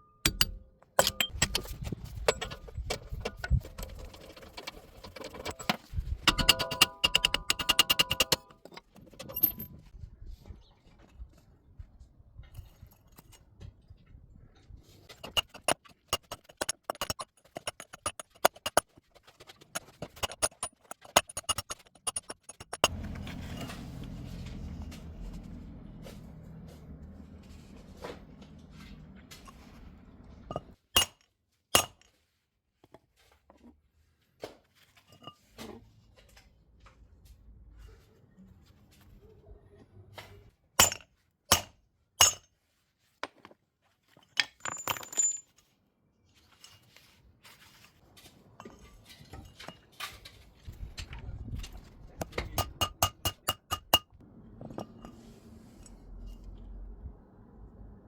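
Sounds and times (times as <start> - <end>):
hammer tapping metal: 0.0 - 1.6, 6.3 - 8.6, 52.2 - 54.2
low steady rumble: 22.9 - 30.8, 54.2 - 58.0.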